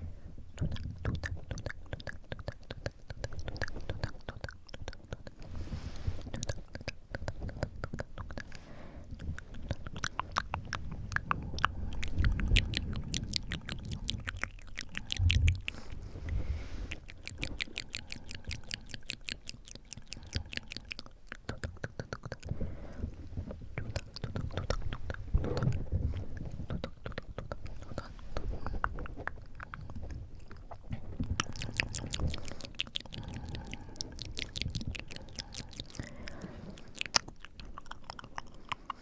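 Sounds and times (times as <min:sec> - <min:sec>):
wet mouth clicks and smacks: 0:06.3 - 0:16.1, 0:16.9 - 0:22.6, 0:23.8 - 0:39.0
breath blowing on microphone: 0:10.8 - 0:17.1.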